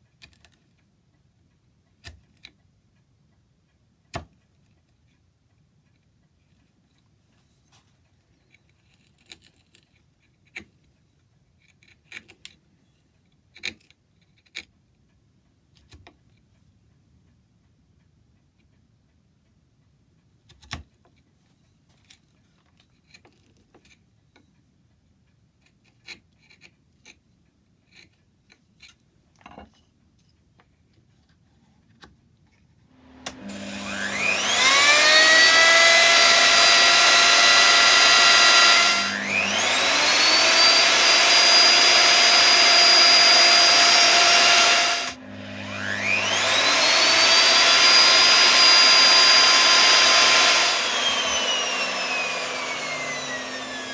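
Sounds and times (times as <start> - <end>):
power tool motor whining: 33.0 - 53.9.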